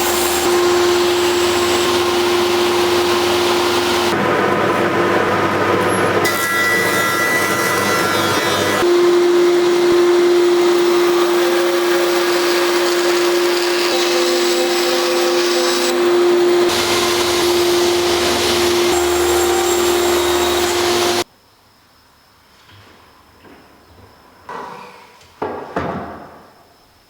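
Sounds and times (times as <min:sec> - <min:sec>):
power tool running: 0:00.0 - 0:21.3.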